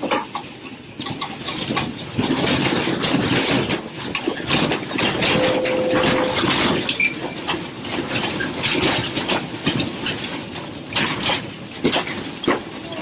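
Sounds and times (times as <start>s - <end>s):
room rattling in earthquake: 0.0s - 5.8s, 6.4s - 13.0s
brief steady tone: 5.2s - 7.2s.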